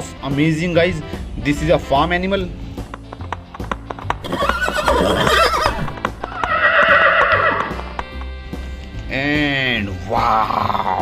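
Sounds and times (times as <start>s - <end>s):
horse whinnying: 4.2s - 8.0s.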